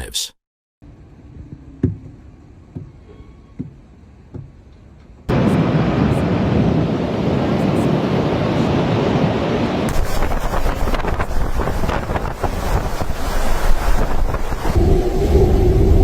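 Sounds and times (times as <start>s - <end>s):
strong wind on microphone: 5.3s - 16.0s.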